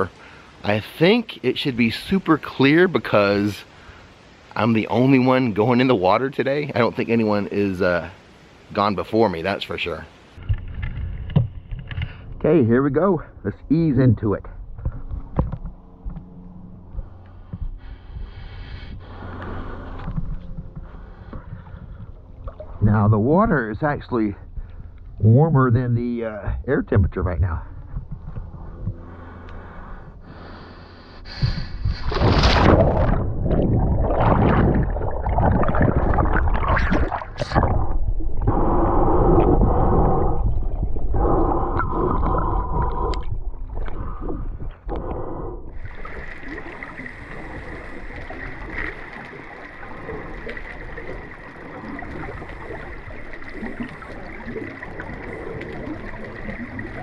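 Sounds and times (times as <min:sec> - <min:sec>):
water sloshing and gurgling: 0:00.0 - 0:57.0
steady rush of water: 0:45.8 - 0:57.0.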